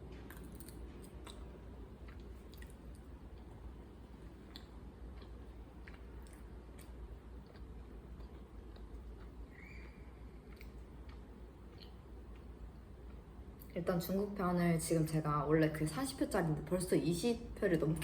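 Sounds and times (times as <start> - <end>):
low steady hum: 0.0 - 18.0
person chewing food: 0.1 - 13.7.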